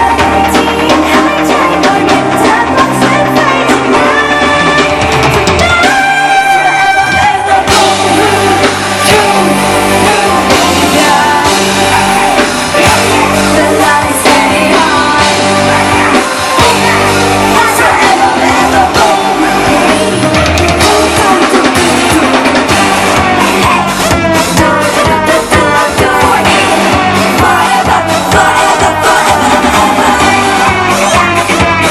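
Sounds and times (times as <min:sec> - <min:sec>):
pop-rock band playing: 0:00.0 - 0:31.9
woman singing: 0:00.0 - 0:31.9.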